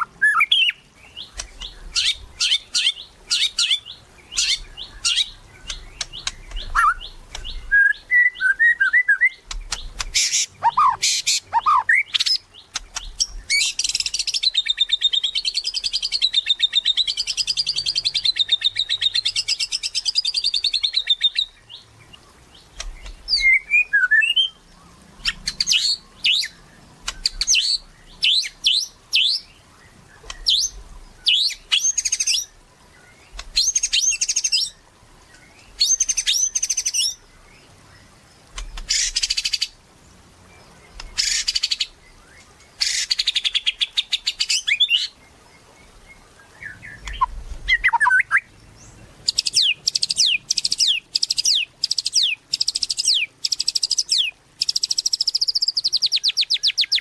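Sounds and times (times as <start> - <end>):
bird singing whistles and chatter: 0.0 - 21.6, 22.8 - 24.6, 46.6 - 48.5
rapid buzzy bird trill: 38.1 - 39.8.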